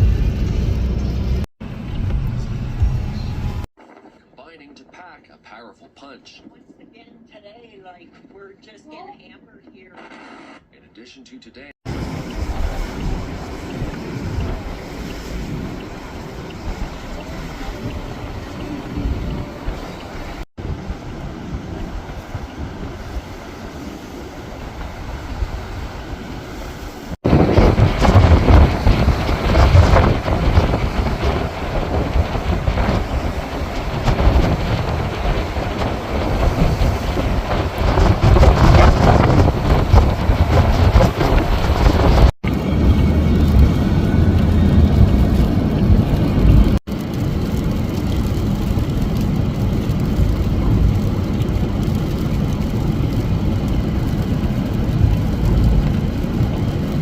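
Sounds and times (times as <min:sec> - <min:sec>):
wind buffeting microphone: 0:11.9 - 0:57.0.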